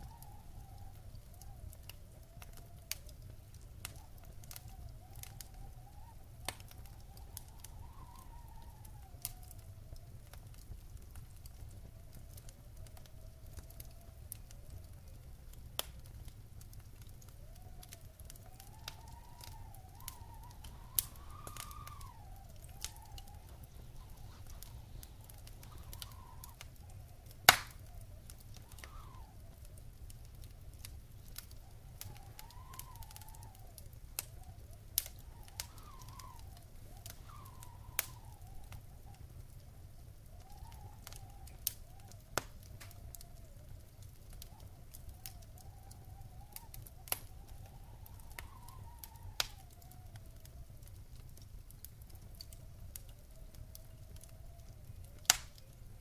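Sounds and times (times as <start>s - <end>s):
faint wavering whistle tone: 0.0s - 10.3s, 17.3s - 29.9s, 31.0s - 43.8s, 44.4s - 50.7s
fire popping: 0.0s - 56.0s
wood fire crackling: 0.0s - 56.0s.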